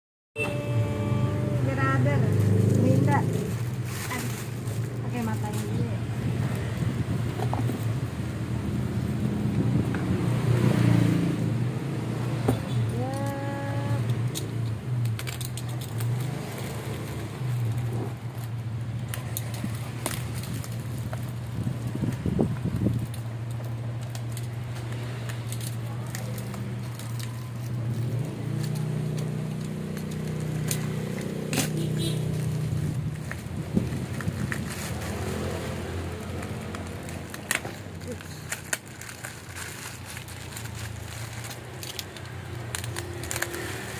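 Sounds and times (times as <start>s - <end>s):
handling clicks and rattles: 14.1s - 35.4s.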